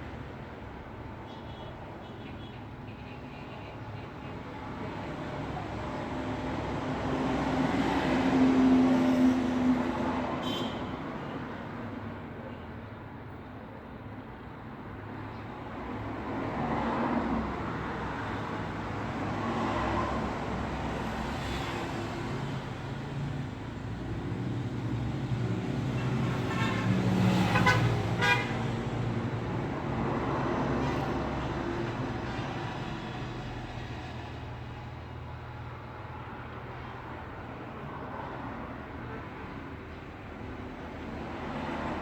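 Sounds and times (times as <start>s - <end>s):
vehicle horn toot: 10.4s - 10.9s, 26.5s - 28.6s
vehicles passing: 15.0s - 42.0s.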